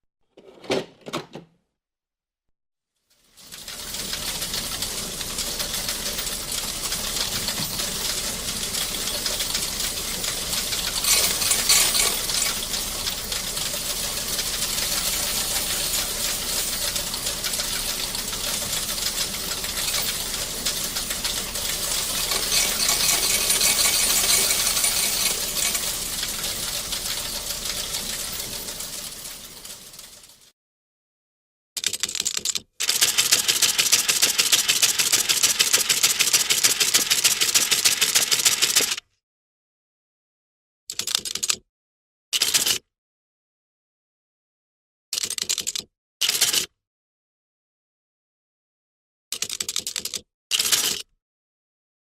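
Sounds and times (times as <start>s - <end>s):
adding machine clattering: 3.4s - 30.4s, 32.8s - 39.0s.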